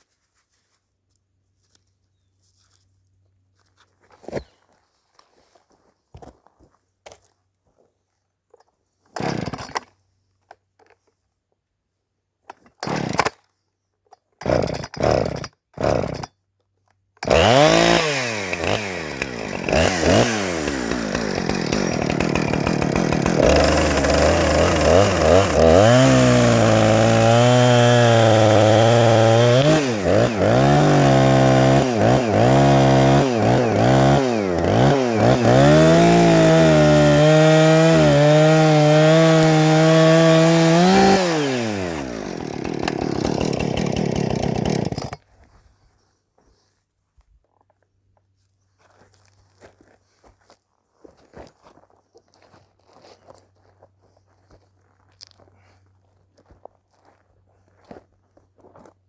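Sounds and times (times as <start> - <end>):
chainsaw cutting into log: 9.1 - 9.9, 12.6 - 13.4, 14.4 - 16.4, 17.2 - 45.2.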